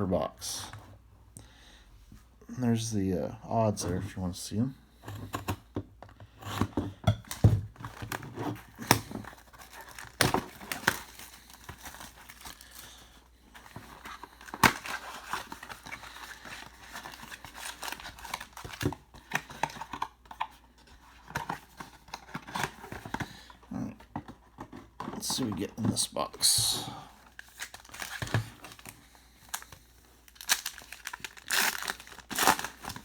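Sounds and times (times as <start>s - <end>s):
plastic wrapping tearing and crinkling: 7.3s - 13.1s, 14.0s - 20.1s, 26.7s - 33.0s.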